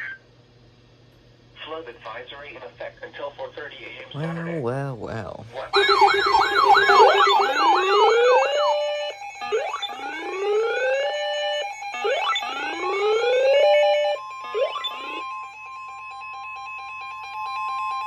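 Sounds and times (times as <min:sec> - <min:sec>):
electronic alert siren: 0:05.7 - 0:18.0
steady single-pitch alert tone: 0:05.8 - 0:10.7.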